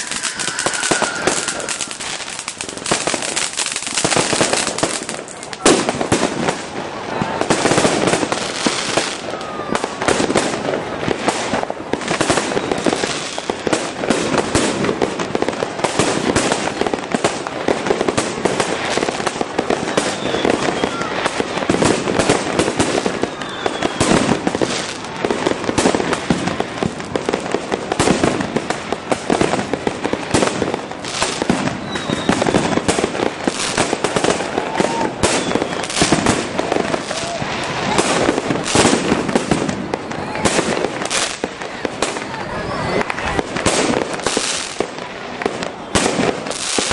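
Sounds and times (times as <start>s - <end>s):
falling firework whistles: 0.0s - 5.0s, 12.0s - 13.7s, 18.9s - 25.8s, 30.4s - 41.5s
fireworks bursting and crackling: 0.0s - 46.9s.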